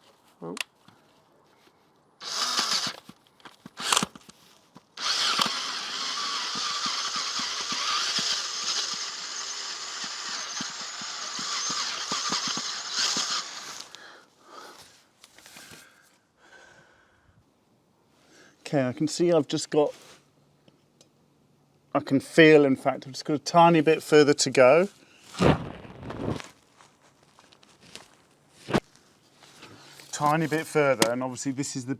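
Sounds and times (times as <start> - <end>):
electric drill drilling metal: 2.2 - 3.0, 3.8 - 4.1, 5.0 - 13.9.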